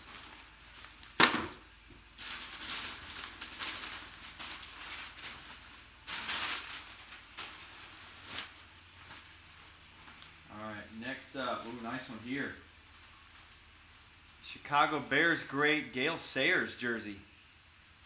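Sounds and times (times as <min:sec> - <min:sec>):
packaging crinkling and rustling: 0:00.0 - 0:14.4.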